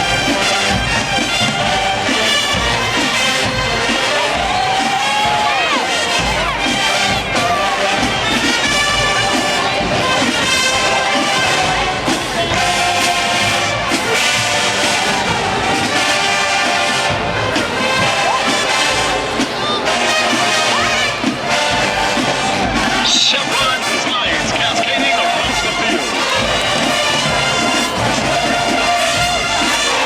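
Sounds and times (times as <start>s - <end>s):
brass chords: 0.0s - 30.0s
marching band music: 0.0s - 30.0s
stadium crowd cheering: 0.0s - 30.0s.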